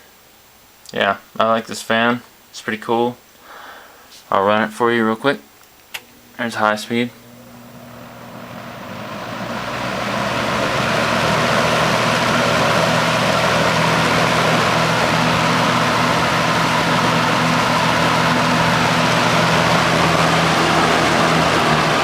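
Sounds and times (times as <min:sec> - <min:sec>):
box fan running: 0:05.9 - 0:22.0.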